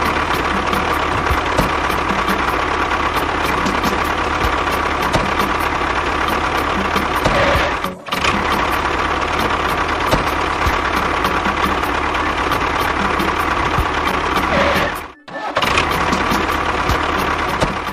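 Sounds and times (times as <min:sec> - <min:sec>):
motor running: 0:00.0 - 0:17.9.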